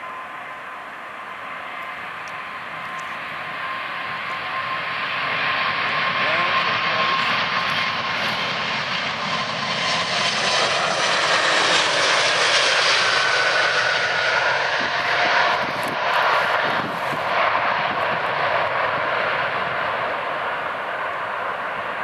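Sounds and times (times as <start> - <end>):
jet airliner passing: 0.0 - 22.0.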